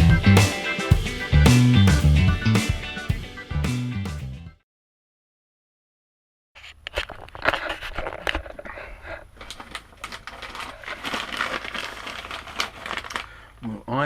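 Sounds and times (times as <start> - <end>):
packaging crinkling and rustling: 6.6 - 13.5.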